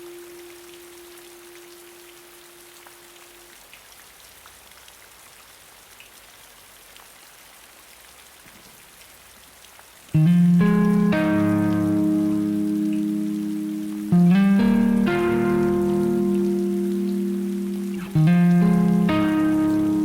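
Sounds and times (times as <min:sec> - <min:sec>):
steady rain: 0:00.0 - 0:20.0
held musical note: 0:10.2 - 0:20.0.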